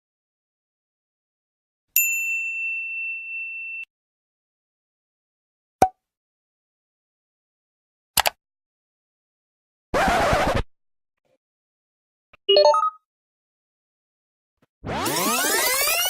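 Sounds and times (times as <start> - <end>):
bright bell-like ding: 2.0 - 3.9.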